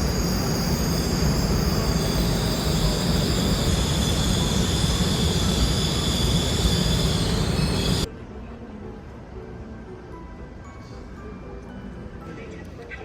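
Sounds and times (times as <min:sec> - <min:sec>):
train rumbling on rails: 0:00.0 - 0:08.1
faint high whine: 0:00.0 - 0:08.7.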